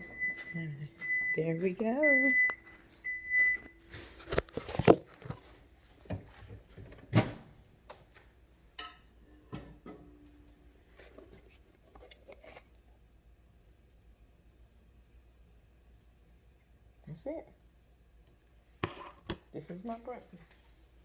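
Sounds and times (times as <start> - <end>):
microwave oven beep: 0.0 - 4.2.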